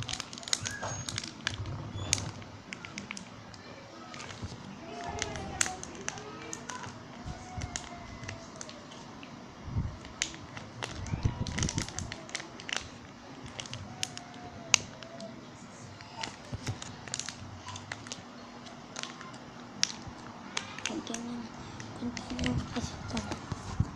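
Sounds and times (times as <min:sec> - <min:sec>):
slime clicking and squelching: 0:16.0 - 0:23.6.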